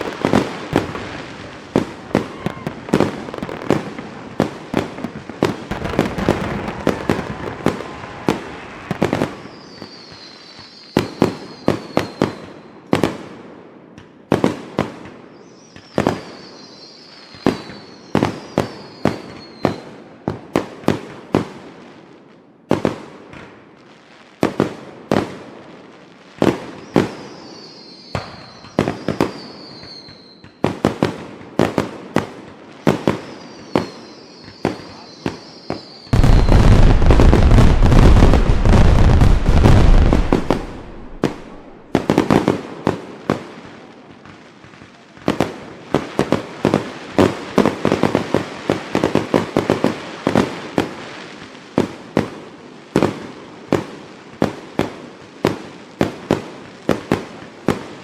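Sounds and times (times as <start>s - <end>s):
fireworks whistles falling: 0.0s - 12.9s, 15.3s - 20.0s, 26.5s - 31.1s, 32.8s - 43.0s
fireworks bangs: 0.0s - 21.8s, 24.4s - 58.0s.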